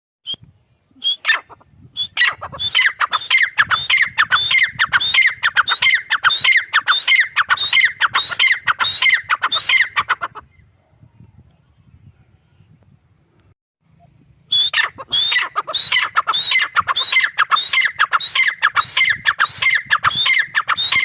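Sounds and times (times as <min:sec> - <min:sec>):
bird shrill repeated call: 0:01.1 - 0:10.3, 0:14.5 - 0:21.0.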